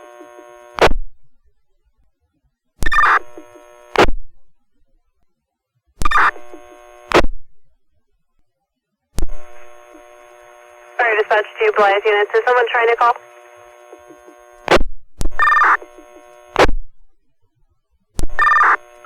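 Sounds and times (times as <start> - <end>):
faint radio hum: 9.4 - 14.8
radio squelch bursts: 10.9 - 14.8, 15.4 - 16.7.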